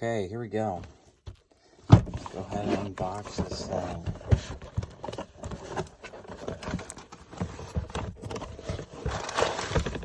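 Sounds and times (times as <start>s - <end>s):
cardboard box being handled: 0.7s - 10.0s
paper rustling: 2.1s - 10.0s.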